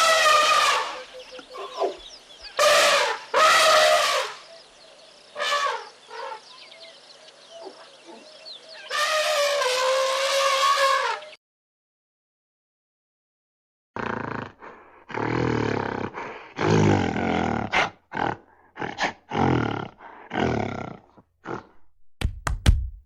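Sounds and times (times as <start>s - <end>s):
loud pitched animal calls: 0.0s - 4.5s, 8.8s - 11.4s.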